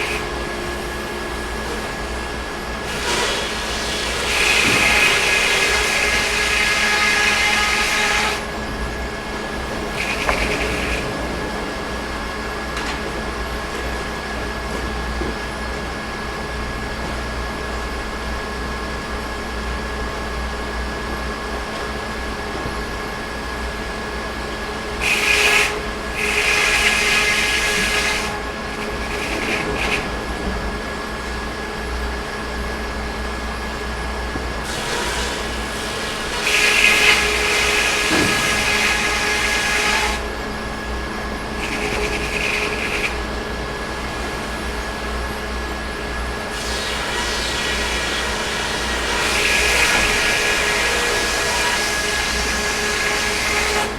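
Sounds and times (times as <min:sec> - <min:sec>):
sawmill running: 0:00.0 - 0:53.9.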